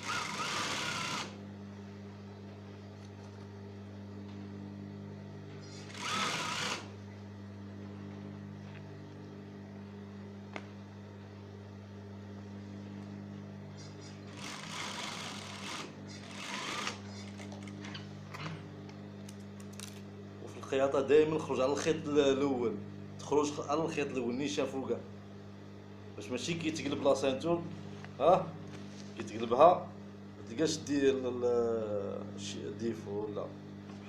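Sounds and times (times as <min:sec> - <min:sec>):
bursts of machine sewing: 0:00.0 - 0:01.4, 0:05.6 - 0:07.0, 0:14.3 - 0:17.2
sewing machine motor humming: 0:00.0 - 0:01.4, 0:05.6 - 0:07.0, 0:14.2 - 0:18.6.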